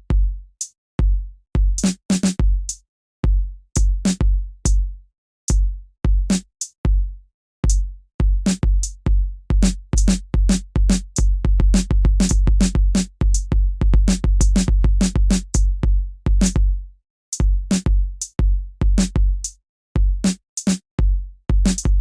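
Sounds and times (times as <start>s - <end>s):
drum machine electronic beat: 5.5s - 16.7s, 17.4s - 22.0s.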